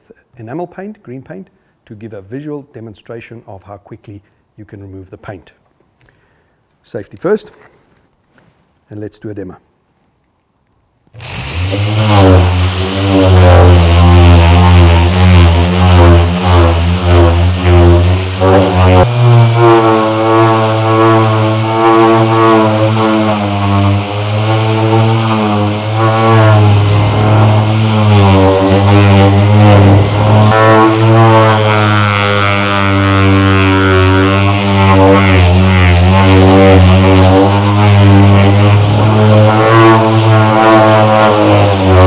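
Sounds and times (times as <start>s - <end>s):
orbital sander buzzing: 11.1s - 42.0s.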